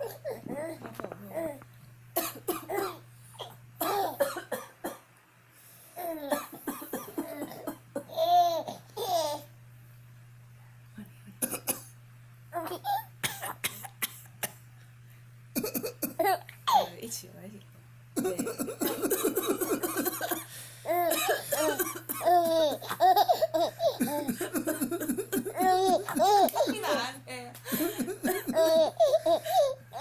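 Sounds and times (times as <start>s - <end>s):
low steady hum: 0.0s - 30.0s
adult coughing: 2.2s - 5.0s, 6.2s - 8.2s, 11.4s - 12.0s, 13.2s - 14.6s, 15.6s - 16.8s, 18.2s - 29.7s.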